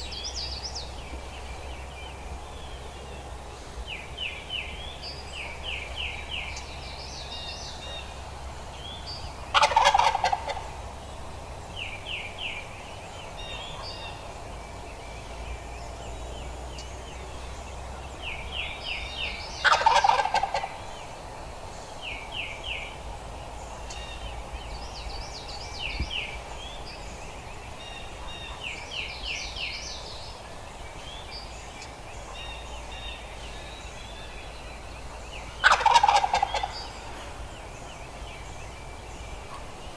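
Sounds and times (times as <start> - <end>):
small birds chirping: 0.0 - 39.9
turkey gobbling: 9.5 - 10.8, 19.6 - 20.9, 35.6 - 37.1.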